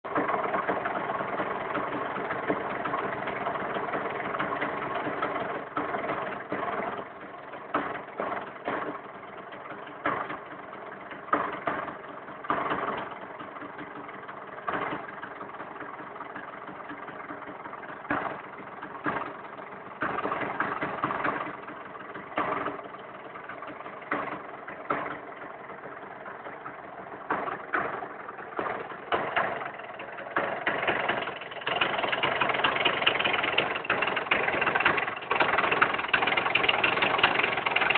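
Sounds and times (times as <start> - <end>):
motorcycle engine revving: 18.0 - 37.9.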